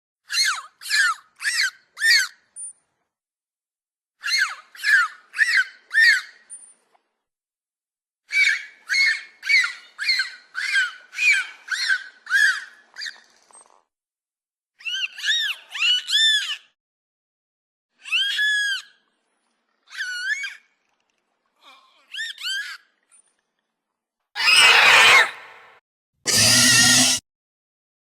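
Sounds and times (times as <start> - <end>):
squealing calls rising and falling: 24.4 - 25.7, 26.3 - 27.2.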